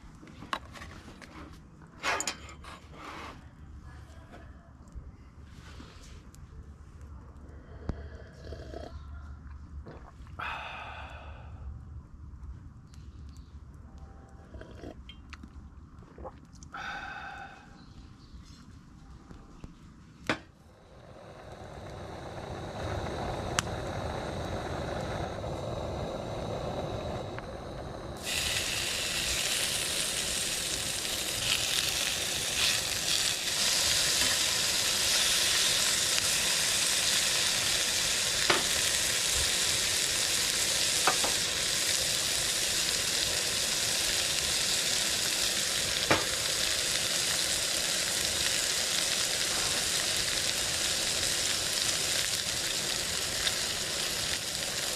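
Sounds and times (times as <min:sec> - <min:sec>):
food sizzling in a pan: 0:28.2 - 0:54.9
sharp oil pops: 0:38.4 - 0:38.8, 0:41.0 - 0:41.4, 0:46.0 - 0:46.4.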